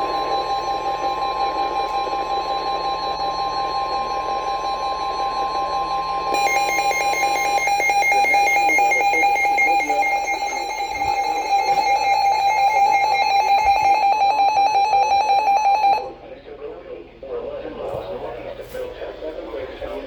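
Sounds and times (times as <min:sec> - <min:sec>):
warbling electronic alarm: 0:00.0 - 0:16.1
steady warning alarm tone: 0:00.0 - 0:16.2.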